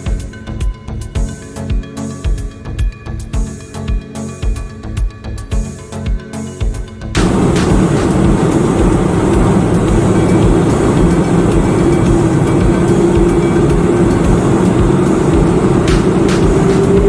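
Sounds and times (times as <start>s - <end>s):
aircraft engine hum: 7.2s - 17.0s
rush of wind in aircraft cabin: 7.2s - 17.0s.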